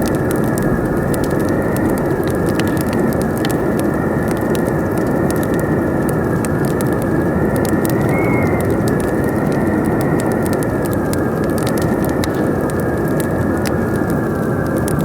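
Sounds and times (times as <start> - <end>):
wind rushing and howling: 0.0 - 15.0
wood fire crackling and popping: 0.0 - 15.0.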